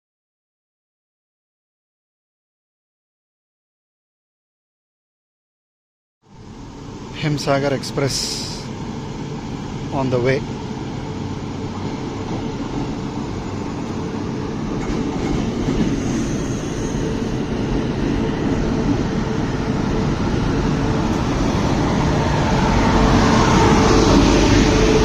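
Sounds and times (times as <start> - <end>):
train rumble: 6.2 - 25.0
steady tone: 16.0 - 25.0.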